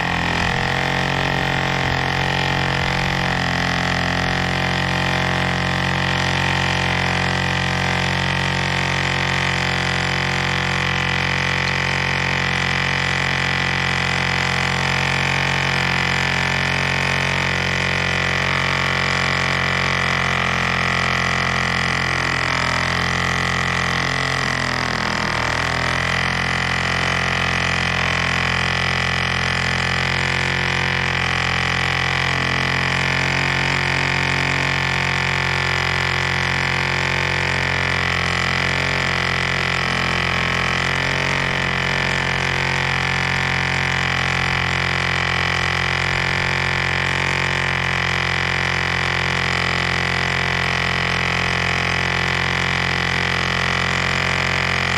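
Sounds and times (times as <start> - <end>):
model airplane engine droning: 0.0 - 54.9.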